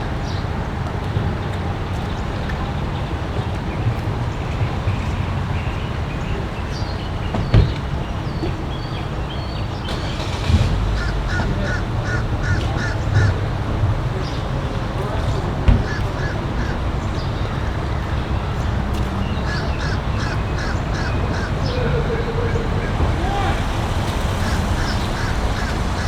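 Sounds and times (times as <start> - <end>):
vehicles rumbling: 0.0 - 26.0
crow cawing: 11.0 - 13.5, 15.8 - 16.8, 19.5 - 26.0.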